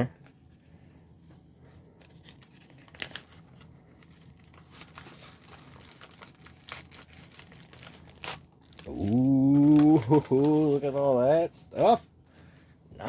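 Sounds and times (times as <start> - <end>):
paper rustling and crinkling: 1.2 - 11.4
envelope being torn open: 2.1 - 10.8.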